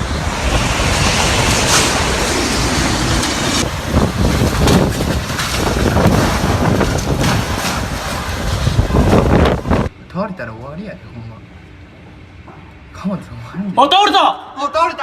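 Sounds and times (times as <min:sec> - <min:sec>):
strong wind gusting: 0:00.0 - 0:09.9
wind buffeting microphone: 0:00.0 - 0:09.9.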